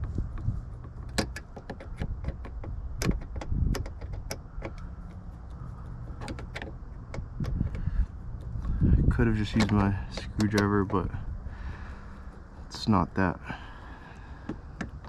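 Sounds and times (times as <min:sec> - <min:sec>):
plastic trim parts knocking: 0:00.0 - 0:08.0
low steady rumble: 0:00.0 - 0:15.0.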